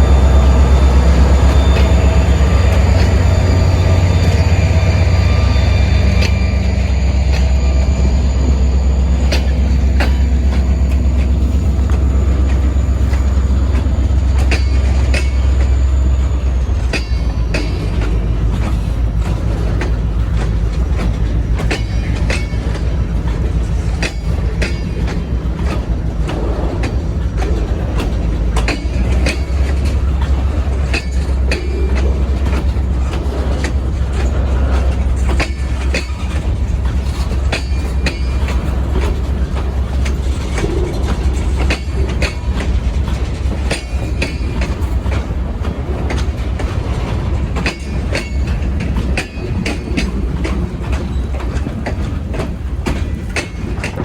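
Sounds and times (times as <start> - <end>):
train rumbling on rails: 0.0 - 54.0
wheel clicks over rail joints: 16.9 - 54.0.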